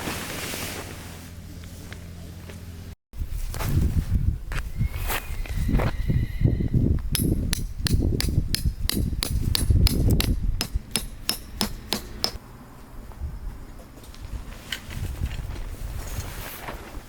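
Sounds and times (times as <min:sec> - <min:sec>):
hammer striking metal: 0:07.2 - 0:12.4.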